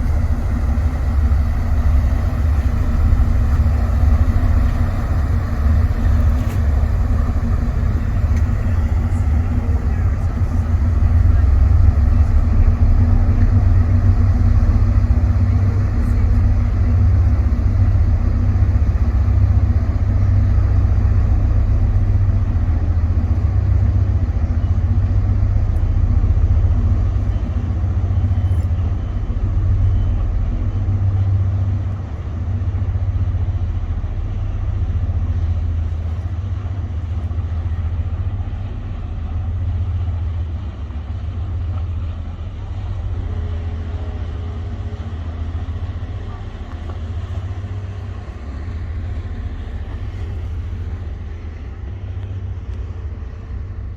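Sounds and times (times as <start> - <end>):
diesel engines rumbling: 0.0 - 53.9.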